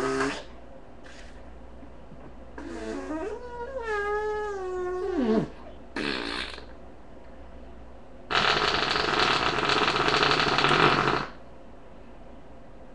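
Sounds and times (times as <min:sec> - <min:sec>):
person making fart noises: 0:00.0 - 0:00.5, 0:02.6 - 0:03.5, 0:05.0 - 0:06.8, 0:08.3 - 0:11.4.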